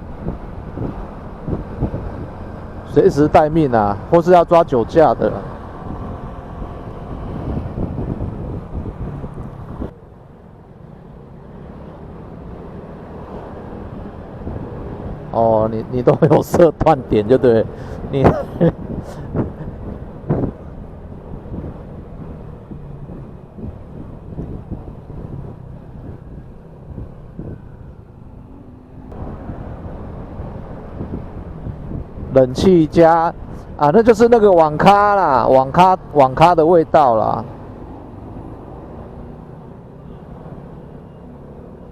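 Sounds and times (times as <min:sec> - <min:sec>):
wind buffeting microphone: 0:00.0 - 0:02.8, 0:05.6 - 0:10.0, 0:13.7 - 0:15.3, 0:17.8 - 0:32.7
motorcycle engine and road rumble: 0:00.0 - 0:41.9
motorcycle engine rumble: 0:17.7 - 0:32.5.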